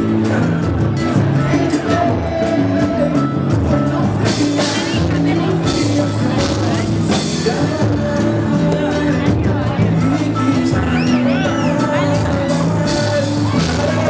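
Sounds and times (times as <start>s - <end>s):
person singing: 0.0s - 14.0s
samba group playing: 0.0s - 14.0s
steady percussion: 0.0s - 14.0s.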